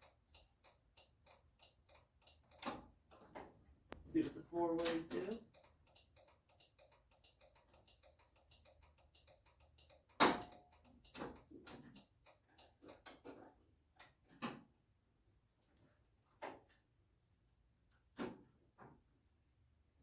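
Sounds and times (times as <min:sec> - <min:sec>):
hazard flasher ticking fast: 0:00.0 - 0:03.0, 0:04.6 - 0:13.0.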